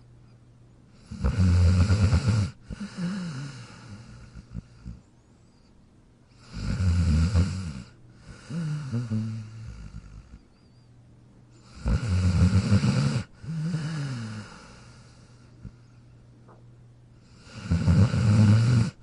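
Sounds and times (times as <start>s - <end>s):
dog snoring: 1.0s - 5.1s, 6.3s - 10.6s, 11.6s - 15.9s, 17.2s - 19.0s.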